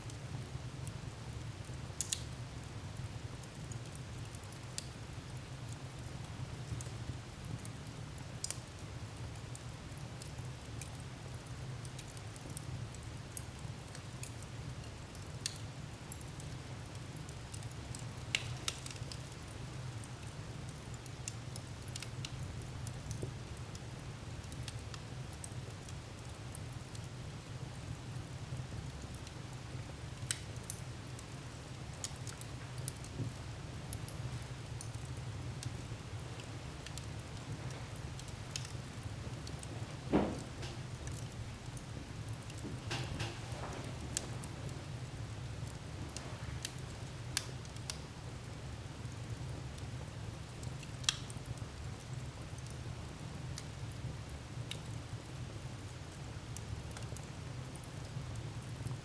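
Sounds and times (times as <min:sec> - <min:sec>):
wood fire crackling: 0:00.0 - 0:59.0
sharp pops and snaps: 0:17.5 - 0:19.4, 0:36.8 - 0:44.6, 0:51.0 - 0:51.3.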